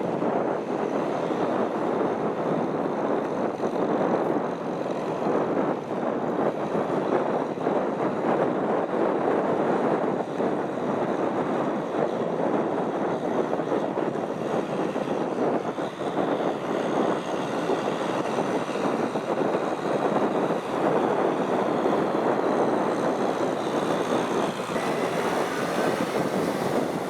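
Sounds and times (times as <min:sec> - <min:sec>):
diesel tractor engine running: 0:21.4 - 0:27.0.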